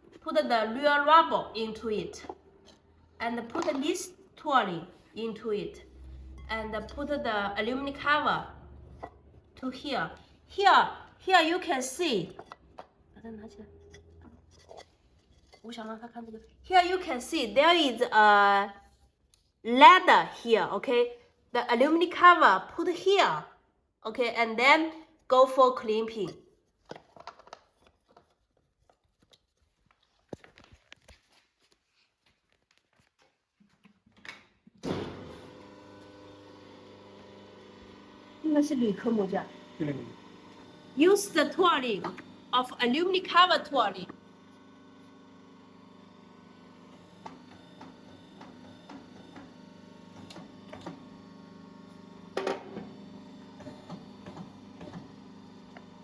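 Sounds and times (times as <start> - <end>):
electrical hum: 35.1 - 56.0.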